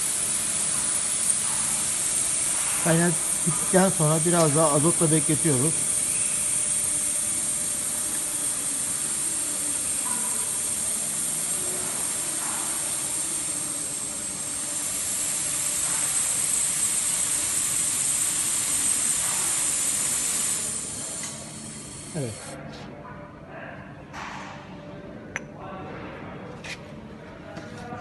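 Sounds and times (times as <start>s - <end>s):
gas hissing through pipe: 0.0s - 22.6s.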